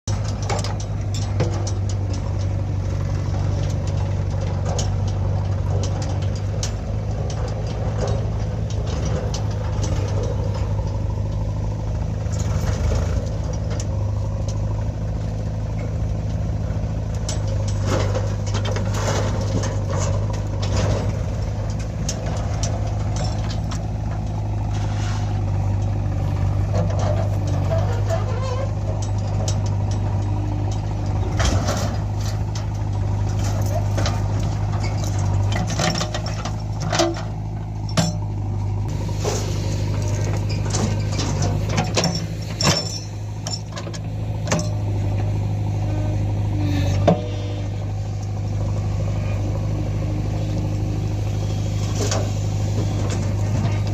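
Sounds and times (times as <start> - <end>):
diesel engine running: 0.0 - 53.9
sharp metal clanks: 40.4 - 44.9.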